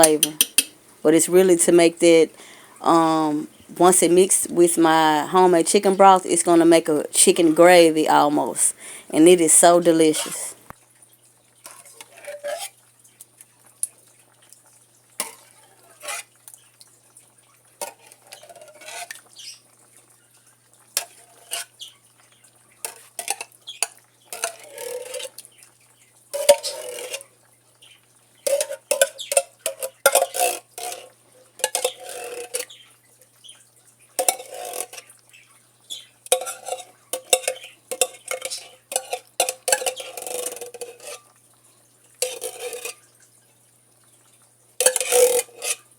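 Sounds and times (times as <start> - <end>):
spoon scraping a pot: 0.0 - 0.8, 26.4 - 27.3, 28.5 - 32.8, 34.2 - 35.1, 35.9 - 41.3, 42.2 - 43.1, 44.8 - 45.9.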